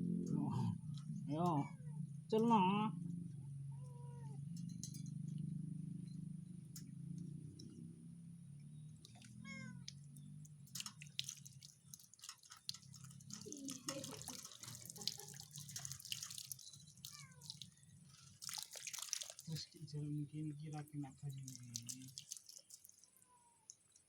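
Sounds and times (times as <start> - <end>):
cat meowing: 3.7 - 4.4, 9.3 - 9.9, 17.0 - 17.7
water splashing and dripping: 8.8 - 24.0.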